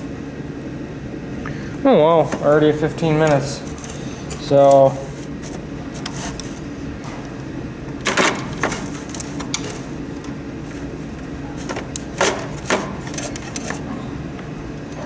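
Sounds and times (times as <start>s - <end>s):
plastic parts clicking and knocking: 3.2s - 7.3s, 7.9s - 14.0s.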